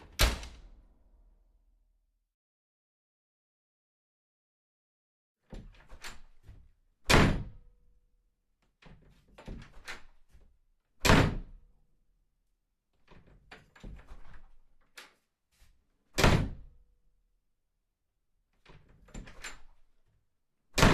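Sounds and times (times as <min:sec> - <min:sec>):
door latch clicks and rattles: 0:19.1 - 0:19.7.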